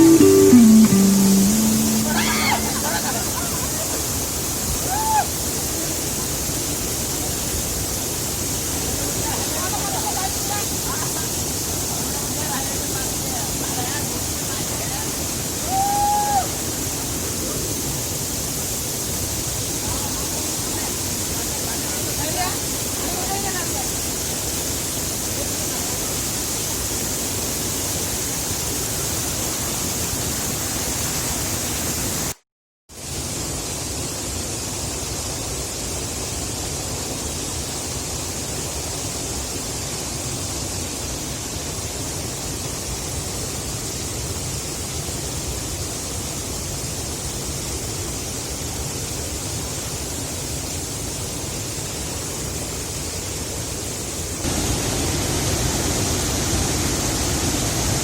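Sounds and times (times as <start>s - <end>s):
waterfall rushing: 0.0s - 28.0s, 54.4s - 58.0s.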